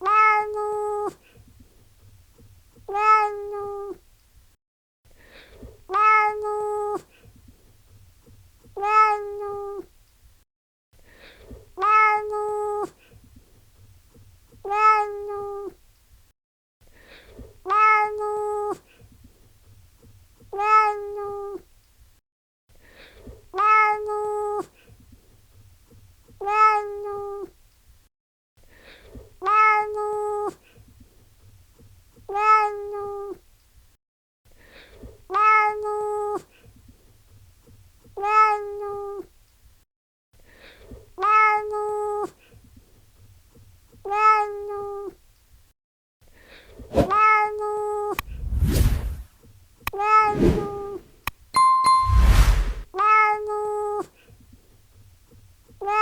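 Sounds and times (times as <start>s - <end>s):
cat meowing: 0.0s - 1.1s, 2.9s - 3.9s, 6.0s - 6.5s, 8.8s - 9.7s, 11.8s - 12.4s, 14.7s - 15.6s, 17.7s - 18.8s, 20.6s - 21.5s, 26.4s - 27.4s, 29.4s - 30.0s, 32.3s - 33.3s, 35.3s - 36.4s, 38.2s - 39.2s, 41.2s - 42.3s, 44.0s - 45.1s, 47.0s - 48.2s, 49.9s - 51.0s, 53.0s - 54.0s.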